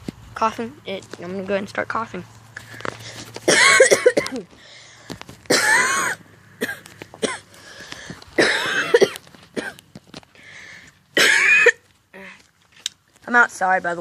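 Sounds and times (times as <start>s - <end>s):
man coughing: 3.5s - 4.4s, 5.5s - 7.4s, 8.4s - 9.8s, 11.2s - 11.8s.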